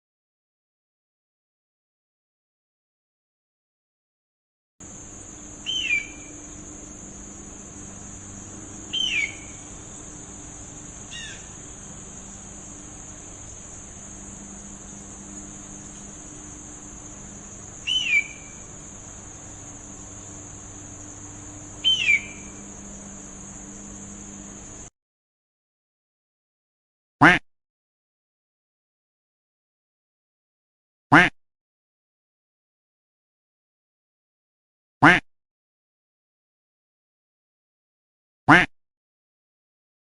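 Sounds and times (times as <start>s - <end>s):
high-pitched insect drone: 4.8s - 24.9s
bird whistled downward call: 5.6s - 6.3s, 8.9s - 9.6s, 11.1s - 11.5s, 17.8s - 18.6s, 21.8s - 22.6s.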